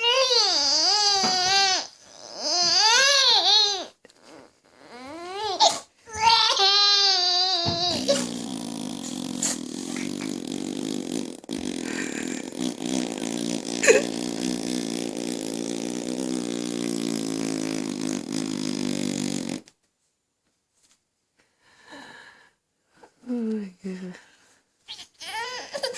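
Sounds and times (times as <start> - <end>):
man blowing raspberry: 7.6 - 19.7.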